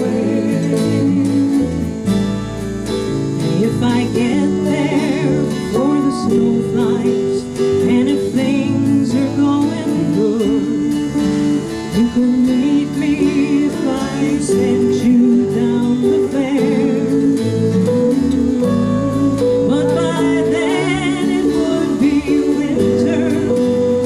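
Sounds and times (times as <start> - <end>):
acoustic guitar: 0.0 - 24.0
bass: 0.0 - 24.0
keyboard: 0.0 - 24.0
wavering melodic line: 3.9 - 7.3.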